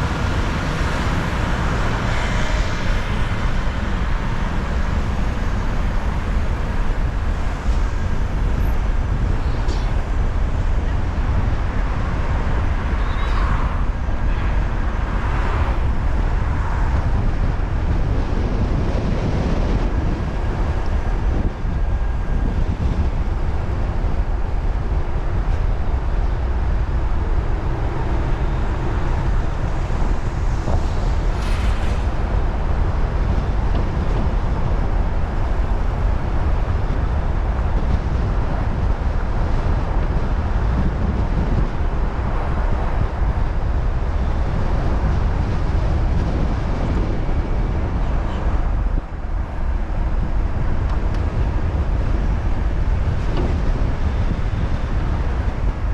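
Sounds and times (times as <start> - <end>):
car driving rumble: 0.0 - 55.9
wind buffeting microphone: 0.0 - 55.9.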